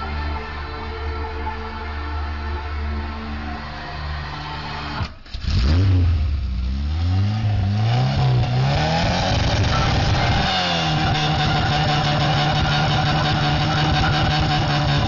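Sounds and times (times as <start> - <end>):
car engine revving: 3.0 - 15.0.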